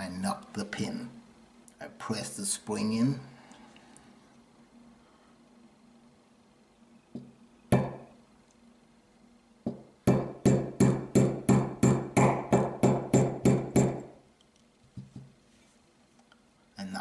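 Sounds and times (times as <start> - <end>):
hammer tapping metal punch: 9.7 - 14.1.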